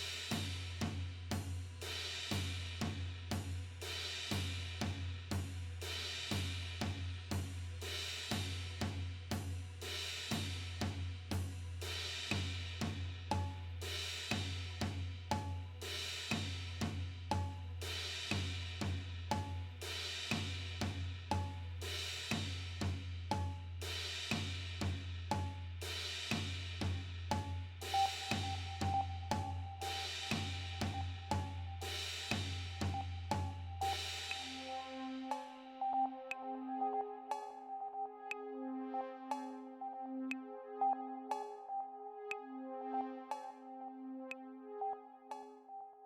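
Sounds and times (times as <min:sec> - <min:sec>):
drum kit beat: 0:00.0 - 0:35.8.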